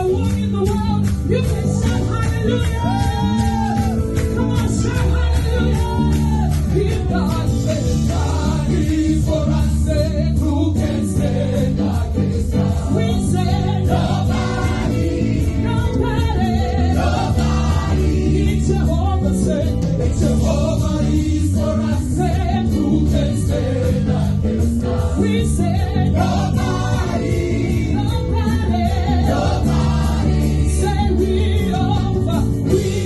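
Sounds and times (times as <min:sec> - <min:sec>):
choir singing over music: 0:07.8 - 0:33.0.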